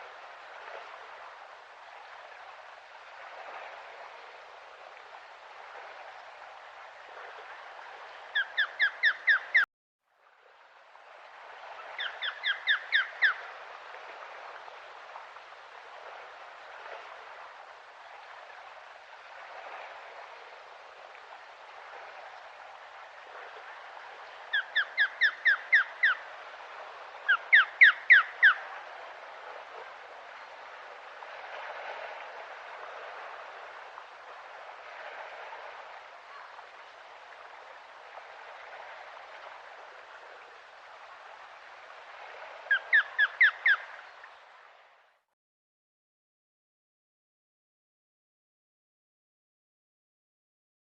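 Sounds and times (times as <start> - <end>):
faint outdoor hiss: 0.0 - 45.3
osprey whistled calls: 8.3 - 9.6, 12.0 - 13.4, 24.5 - 26.2, 27.3 - 28.6, 42.7 - 44.0.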